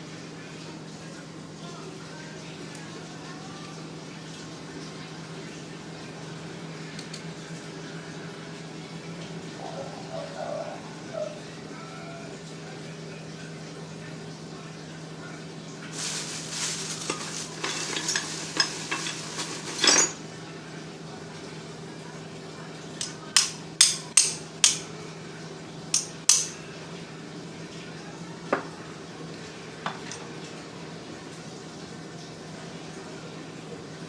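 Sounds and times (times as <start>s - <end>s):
small metal parts clinking: 16.6s - 20.2s.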